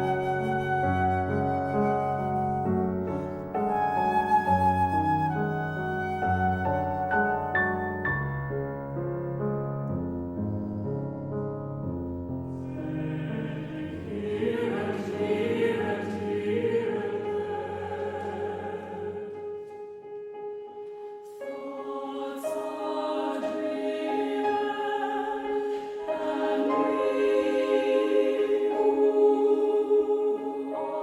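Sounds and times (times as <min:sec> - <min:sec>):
choir singing sustained chords: 0:00.0 - 0:07.0, 0:10.4 - 0:19.8, 0:20.6 - 0:31.0.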